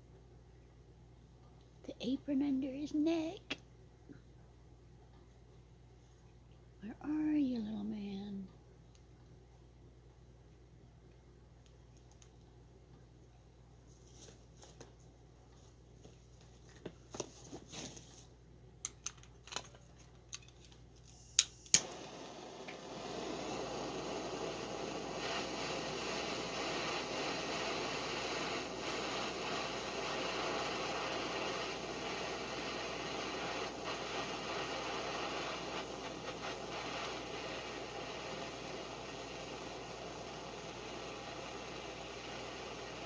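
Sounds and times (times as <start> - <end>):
small clicks and taps: 11.6 - 12.4.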